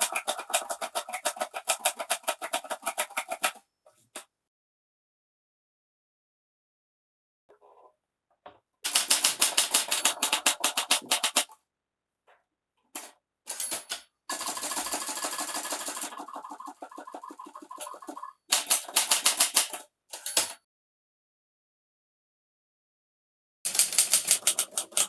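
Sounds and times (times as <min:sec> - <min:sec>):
typewriter key strikes: 0:23.7 - 0:25.0.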